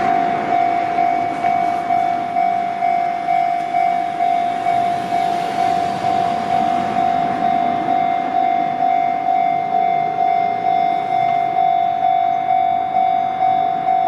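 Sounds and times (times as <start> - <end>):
level-crossing electronic bell: 0.0 - 14.0.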